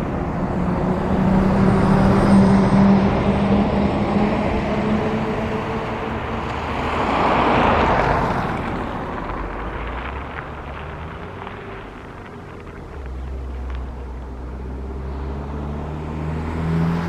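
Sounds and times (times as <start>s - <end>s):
vehicle passing by: 0.0s - 17.0s.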